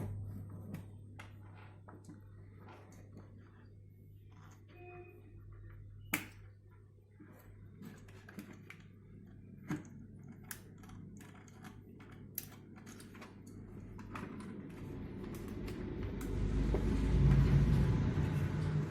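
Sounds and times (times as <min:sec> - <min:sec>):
steady low hum: 0:00.0 - 0:12.1.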